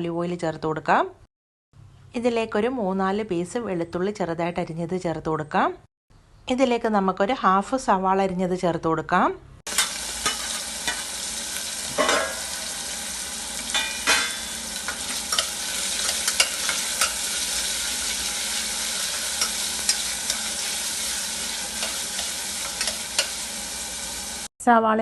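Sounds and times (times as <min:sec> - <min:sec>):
spoon scraping and knocking pot: 0:09.7 - 0:11.1, 0:11.9 - 0:12.6, 0:13.7 - 0:23.4
onion sizzling in oil: 0:09.7 - 0:24.5.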